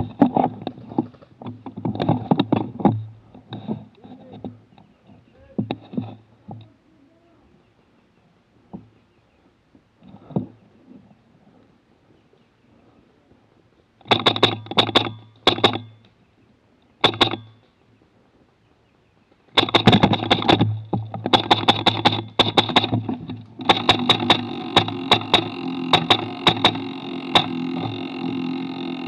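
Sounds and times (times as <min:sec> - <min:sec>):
low hum: 0:00.0 - 0:29.0
airsoft gun rapid shots: 0:23.6 - 0:27.6.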